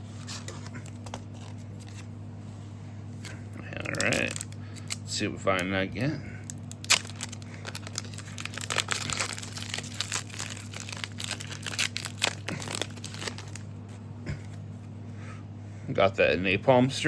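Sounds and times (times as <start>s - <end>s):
low electrical hum: 0.0s - 17.0s
wrapper tearing and crinkling: 3.8s - 5.0s, 6.4s - 13.7s.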